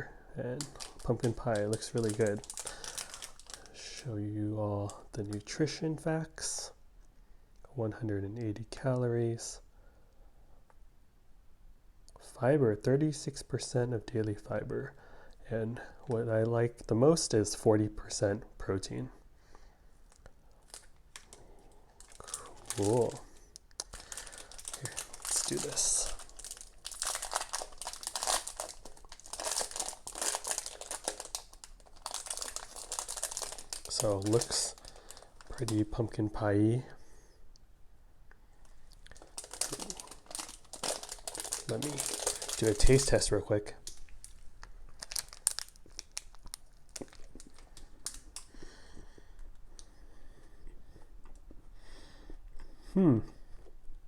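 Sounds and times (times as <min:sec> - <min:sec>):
wrapper tearing and crinkling: 0:00.6 - 0:03.9, 0:20.6 - 0:21.4, 0:22.0 - 0:36.0, 0:39.0 - 0:48.5.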